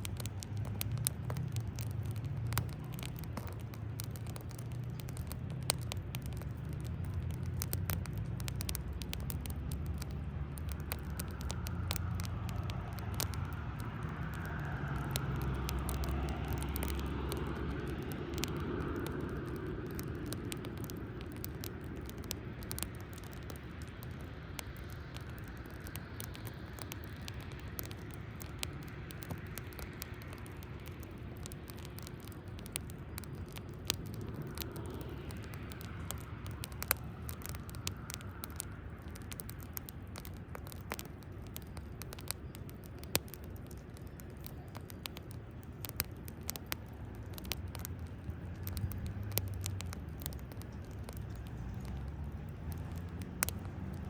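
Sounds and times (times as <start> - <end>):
car passing low rumble: 0.0 - 42.3, 45.2 - 54.0
wood fire crackling and popping: 0.0 - 54.0.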